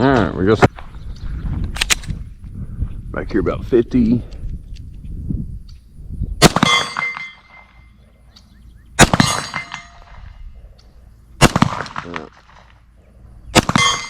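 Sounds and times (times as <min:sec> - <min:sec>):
pistol shots: 0:06.4 - 0:07.6, 0:09.0 - 0:10.2, 0:11.4 - 0:12.8, 0:13.5 - 0:14.0
steel target clanging ring: 0:06.6 - 0:08.0, 0:09.2 - 0:10.1, 0:13.7 - 0:14.0.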